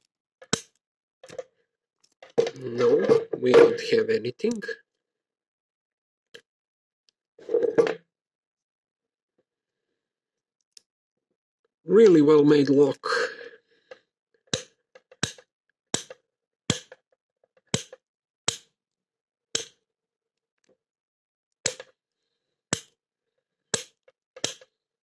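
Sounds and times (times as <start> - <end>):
lock pick clicking in padlock: 23.8 - 24.7.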